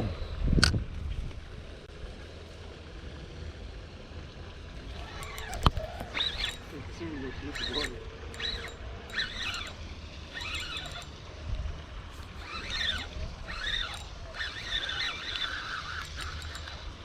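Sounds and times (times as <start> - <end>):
birds squeaky chirps: 4.9 - 11.2.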